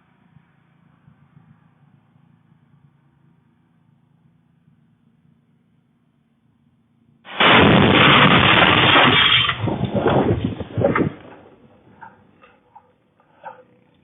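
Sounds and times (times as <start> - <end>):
loud distorted explosion: 7.3 - 12.0
debris cracks and rattles: 7.3 - 12.7.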